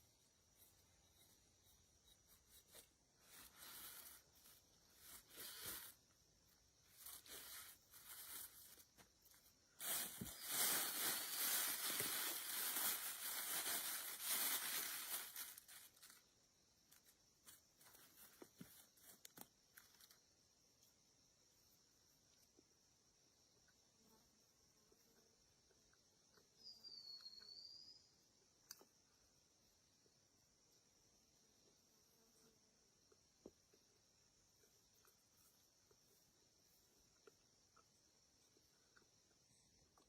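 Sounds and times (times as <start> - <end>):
dry rustling and tearing: 6.9 - 8.9, 9.8 - 16.2.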